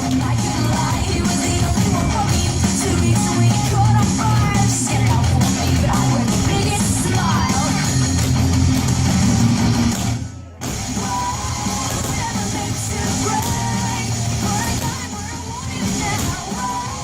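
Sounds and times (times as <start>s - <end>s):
rock music with singing: 0.0s - 17.0s.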